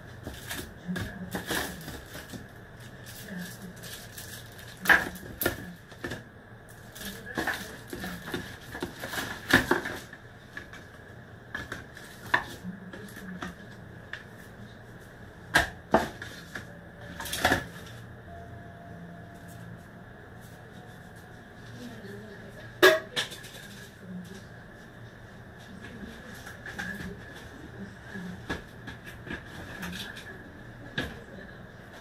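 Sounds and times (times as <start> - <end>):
low hum: 16.3 - 22.8
faint high tone: 18.0 - 21.9.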